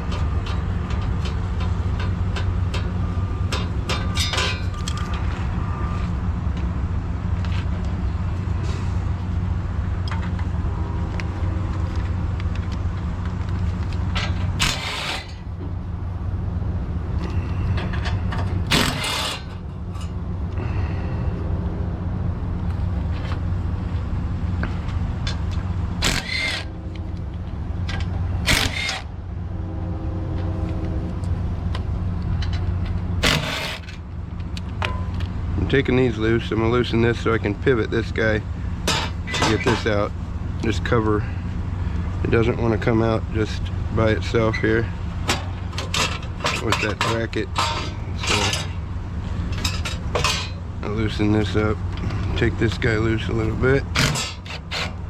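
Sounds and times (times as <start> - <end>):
hand tools clicking on bolts: 25.3 - 26.7, 27.9 - 29.1, 33.2 - 34.7.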